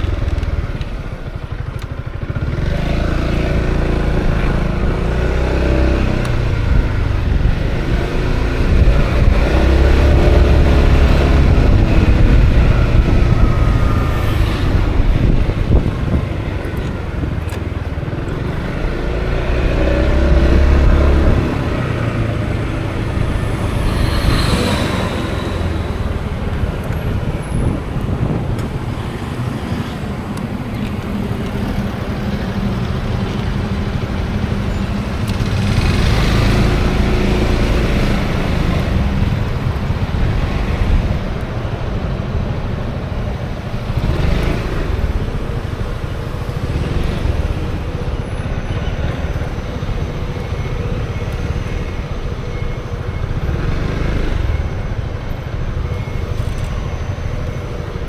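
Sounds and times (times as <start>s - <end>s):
road traffic: 0.0s - 58.0s
scooter engine: 0.0s - 58.0s
wind on camera microphone: 3.8s - 33.3s.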